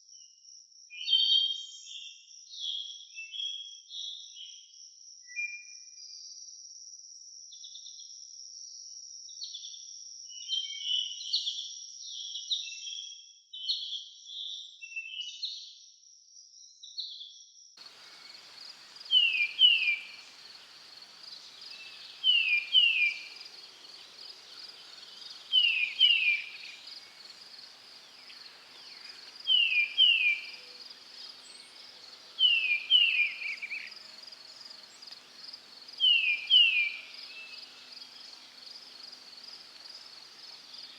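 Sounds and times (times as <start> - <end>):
birds chirping: 17.8 - 40.9
insects trilling: 17.8 - 40.9.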